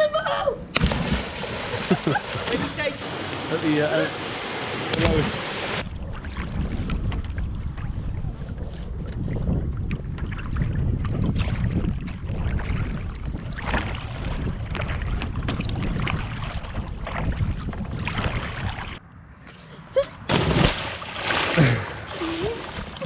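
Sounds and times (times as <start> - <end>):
water splashing and sloshing: 0.7 - 19.0, 20.2 - 23.0
wind rumbling on microphone: 4.8 - 19.3.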